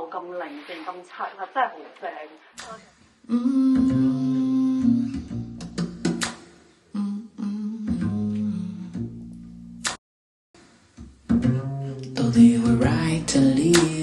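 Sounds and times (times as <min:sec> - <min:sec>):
plucked string music with bass: 0:03.7 - 0:06.3, 0:07.8 - 0:10.0, 0:11.0 - 0:14.0.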